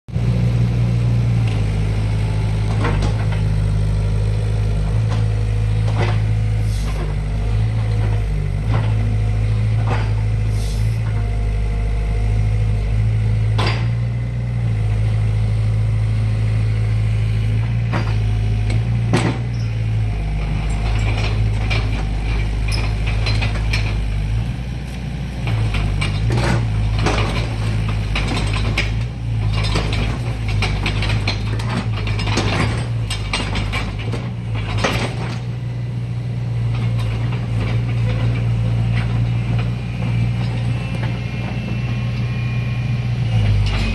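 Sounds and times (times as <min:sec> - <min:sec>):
excavator diesel engine running: 0:00.1 - 0:43.9
machine clanks and knocks: 0:02.6 - 0:03.6, 0:04.8 - 0:10.4, 0:13.4 - 0:14.2, 0:17.5 - 0:24.2, 0:25.4 - 0:35.5, 0:36.6 - 0:42.0.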